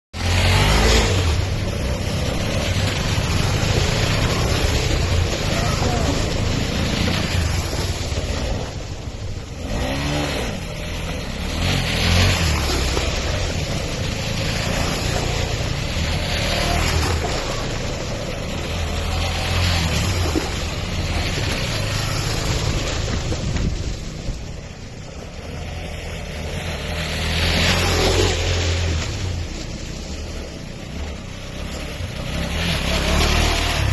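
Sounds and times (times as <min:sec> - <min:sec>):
rushing noise: 0:00.2 - 0:31.0
motorcycle engine running: 0:00.2 - 0:33.9
wind noise on microphone: 0:22.9 - 0:24.6.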